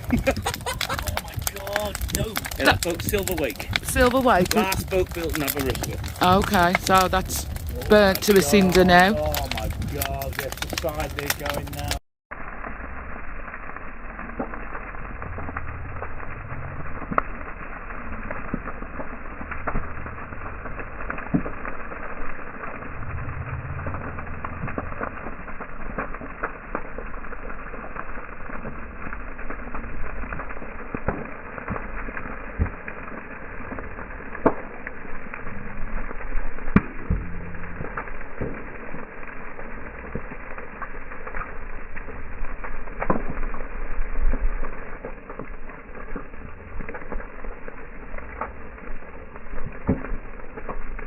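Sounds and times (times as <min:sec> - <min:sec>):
bonfire crackling: 0:00.0 - 0:51.0
fire low rumble: 0:00.0 - 0:51.0.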